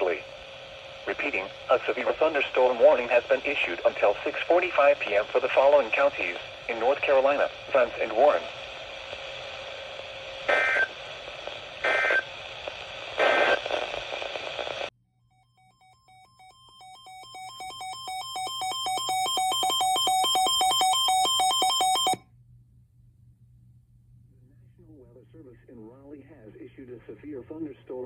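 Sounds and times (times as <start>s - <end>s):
radio static: 0.0s - 14.9s
warbling data tone bursts: 15.7s - 22.2s
rapid electronic beeps: 17.0s - 22.2s.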